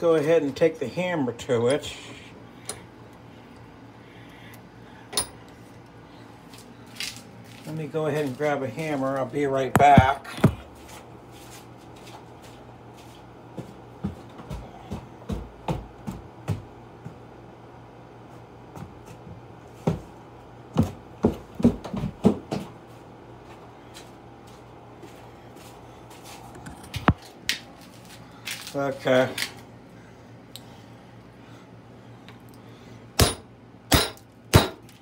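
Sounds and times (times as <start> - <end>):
steady low hum: 0.0 - 35.0.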